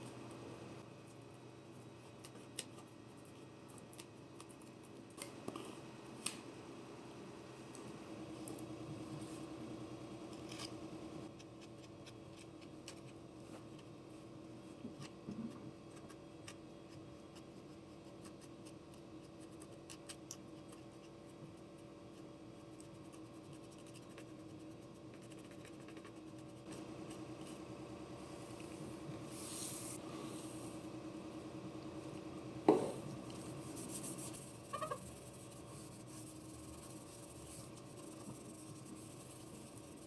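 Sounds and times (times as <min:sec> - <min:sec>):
steady low hum: 0:00.0 - 0:04.4, 0:05.2 - 0:11.4, 0:20.6 - 0:40.0.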